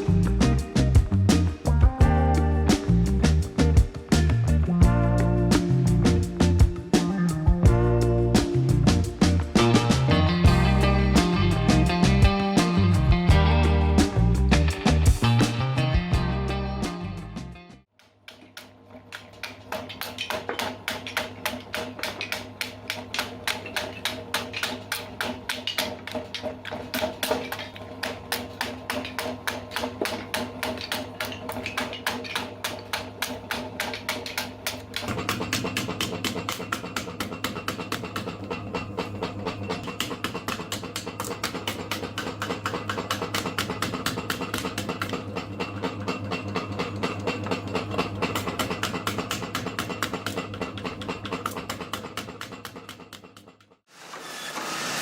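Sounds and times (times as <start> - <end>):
music with quick percussive beat: 0.0 - 17.7
steady low tone: 0.1 - 17.2.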